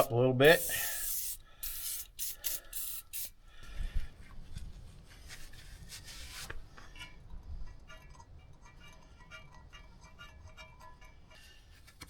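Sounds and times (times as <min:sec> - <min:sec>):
spray hiss: 0:00.0 - 0:03.4
handling and rubbing noises: 0:04.2 - 0:07.0.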